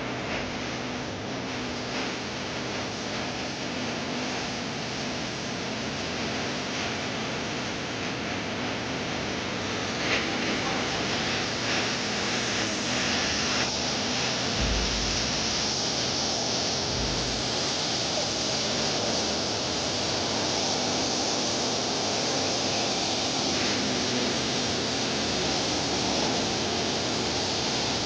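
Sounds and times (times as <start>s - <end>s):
water rushing: 14.6s - 15.7s, 16.9s - 17.6s.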